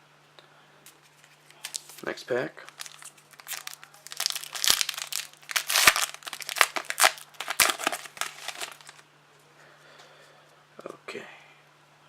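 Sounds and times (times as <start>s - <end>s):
wrapper crinkling and tearing: 1.2s - 9.0s.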